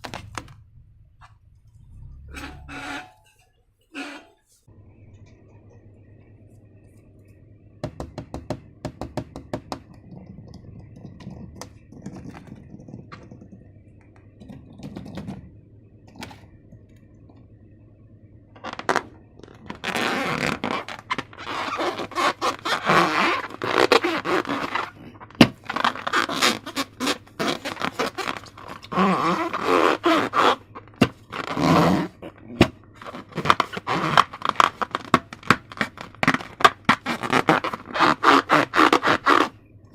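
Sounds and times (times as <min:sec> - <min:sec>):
slime scraping and crackling: 0:18.6 - 0:39.6.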